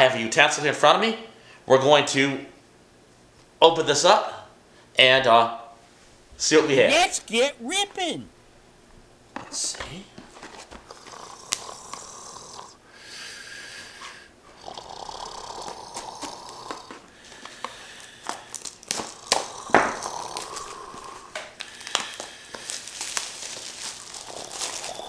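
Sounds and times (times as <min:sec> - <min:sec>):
wrapping torn away: 0:10.4 - 0:12.1, 0:18.2 - 0:25.0.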